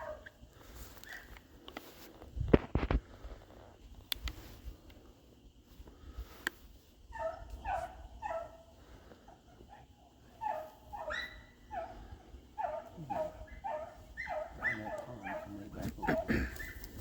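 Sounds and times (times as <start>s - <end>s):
dogs barking: 0.0s - 0.4s, 7.1s - 17.0s.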